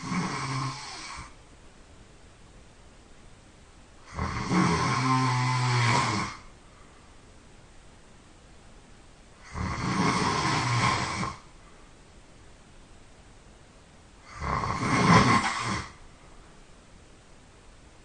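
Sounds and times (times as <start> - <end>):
person snoring loudly: 0.0 - 1.4, 4.0 - 6.5, 9.4 - 11.5, 14.2 - 16.0.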